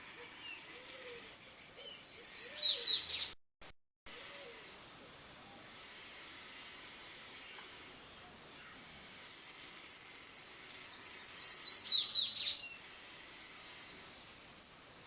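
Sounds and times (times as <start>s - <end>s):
faint steady hiss: 4.1s - 11.1s, 11.9s - 15.0s.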